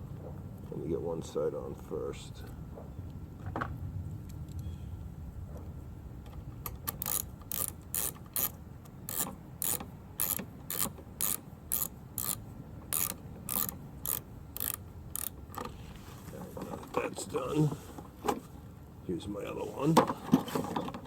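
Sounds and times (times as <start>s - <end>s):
ratchet wrench clicking: 6.9s - 15.4s.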